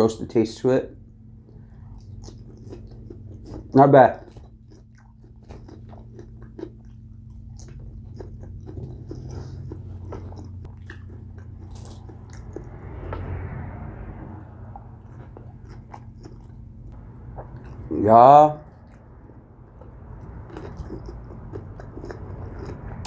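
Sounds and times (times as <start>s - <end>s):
faint low hum: 0.0s - 23.0s
chewing with wet mouth clicks: 1.4s - 12.5s, 15.6s - 17.9s, 18.7s - 23.0s.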